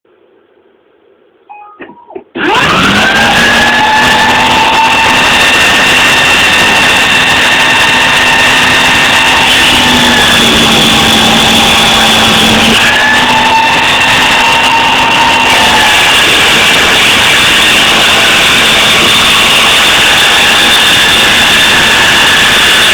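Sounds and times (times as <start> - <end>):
clicks: 1.5 - 2.4
high-speed motor whine: 2.4 - 22.9.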